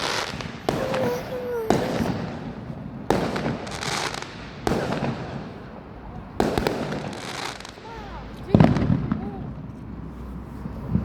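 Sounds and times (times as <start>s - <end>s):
fireworks bangs: 0.0s - 10.1s
fireworks crackling: 0.0s - 11.0s.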